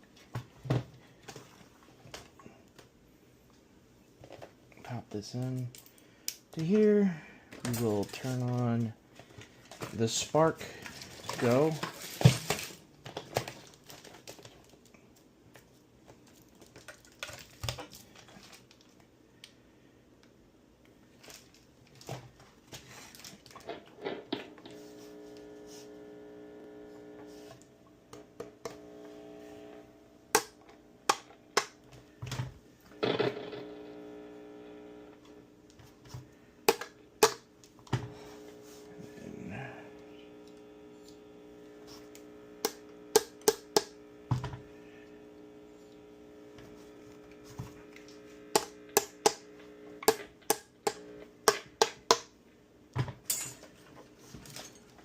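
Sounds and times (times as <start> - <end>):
electric guitar chord ringing: 28.6 - 30.9.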